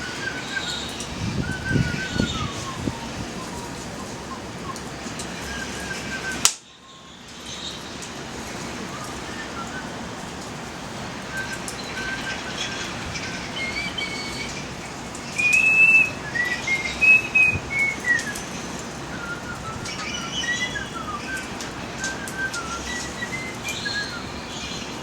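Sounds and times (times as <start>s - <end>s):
background hiss: 0.0s - 25.0s
songbird singing: 0.0s - 25.0s
wood fire clicks: 6.4s - 6.7s.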